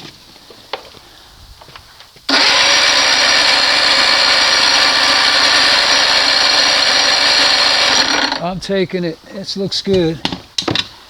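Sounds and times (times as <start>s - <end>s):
outboard engine starter cranking: 2.3s - 8.6s.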